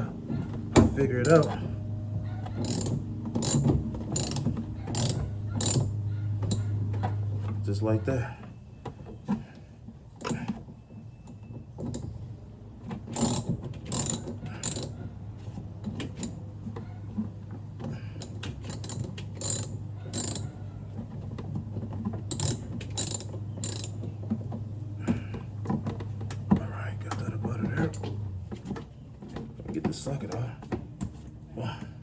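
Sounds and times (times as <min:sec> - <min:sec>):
ratchet wrench clicking: 0:00.8 - 0:01.6, 0:02.6 - 0:06.7, 0:13.2 - 0:15.0, 0:18.2 - 0:20.5, 0:22.3 - 0:24.0.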